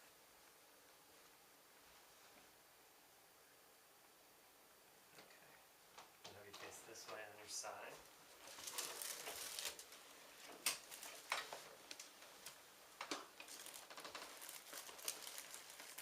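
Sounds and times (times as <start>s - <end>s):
rustling and crinkling: 6.4s - 16.0s.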